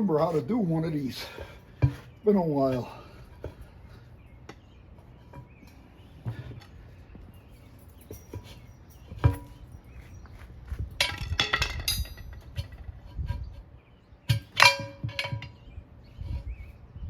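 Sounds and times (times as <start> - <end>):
tire irons clanking on rim: 7.8 - 9.8, 10.8 - 13.3, 14.3 - 15.8
loud ringing clangs: 14.3 - 15.6.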